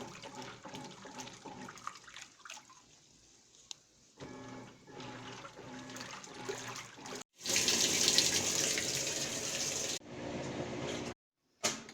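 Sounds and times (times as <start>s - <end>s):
water rushing into washing machine: 0.0s - 3.0s, 4.3s - 10.0s.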